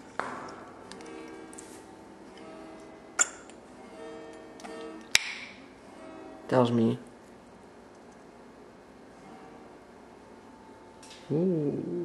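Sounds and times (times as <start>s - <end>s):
background music with held notes: 0.8s - 6.5s.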